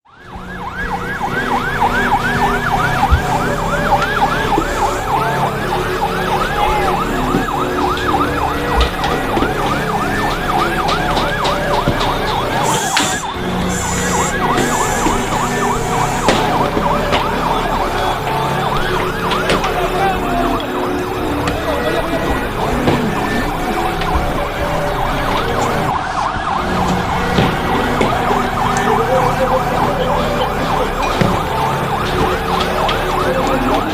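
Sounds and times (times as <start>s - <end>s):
crowd voices: 0.0s - 33.9s
sirens yelping and wailing: 0.0s - 33.9s
sharp bangs: 1.1s - 21.6s.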